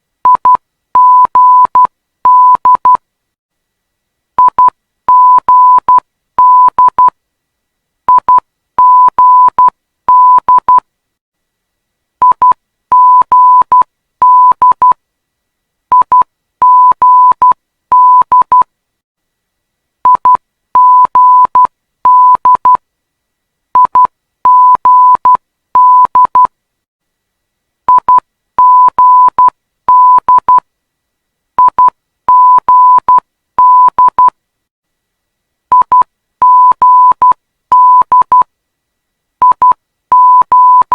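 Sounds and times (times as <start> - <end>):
morse code beeps: 20.1 - 22.8, 23.8 - 26.5, 27.9 - 30.6, 31.6 - 34.3, 35.7 - 38.4, 39.4 - 40.9.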